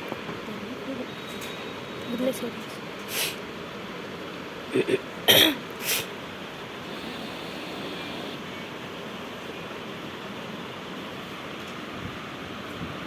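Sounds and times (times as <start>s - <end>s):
steady air hiss: 6.8s - 8.4s.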